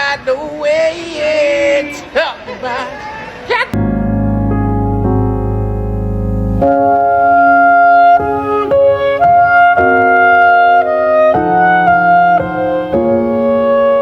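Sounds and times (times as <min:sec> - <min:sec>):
organ-like keyboard melody: 0:03.8 - 0:14.0.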